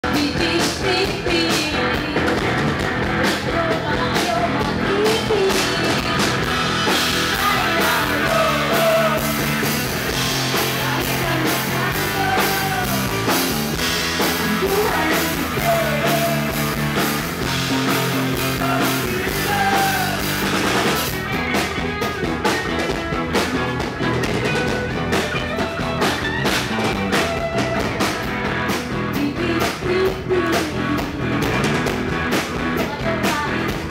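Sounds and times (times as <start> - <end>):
woman singing: 0.0 - 2.4, 3.2 - 6.4, 7.3 - 9.4, 10.5 - 13.1, 14.4 - 16.6, 29.1 - 31.5, 32.7 - 33.9
rock band playing live: 0.0 - 33.9.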